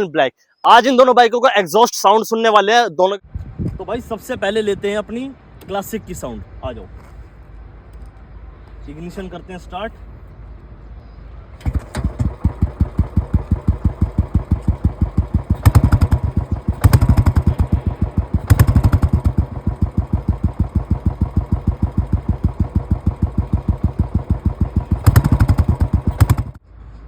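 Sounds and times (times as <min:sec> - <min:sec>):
motorcycle engine thumping idle: 0:11.6 - 0:26.6
motorcycle throttle blips: 0:11.6 - 0:26.6.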